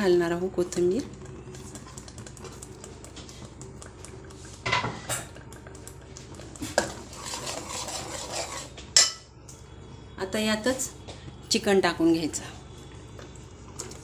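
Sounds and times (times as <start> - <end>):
metal spoon scraping pot: 6.8 - 9.2.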